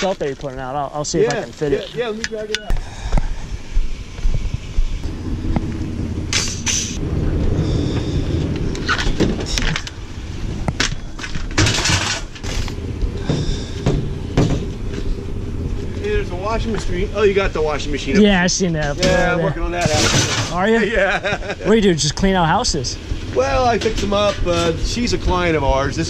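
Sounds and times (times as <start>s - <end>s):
vehicle engine running: 1.3s - 26.0s
metallic clanks and scraping: 7.7s - 17.0s, 18.8s - 20.8s, 23.1s - 25.9s.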